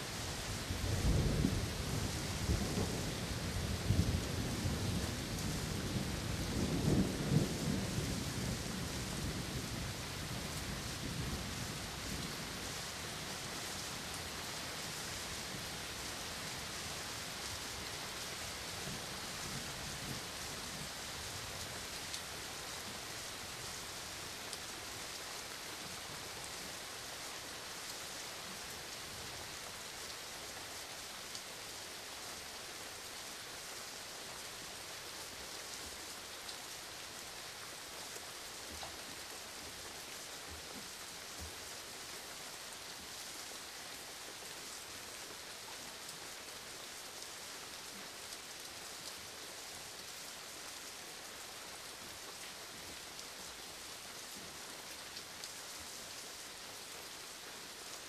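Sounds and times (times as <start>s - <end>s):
steady rain hissing: 0.0s - 58.0s.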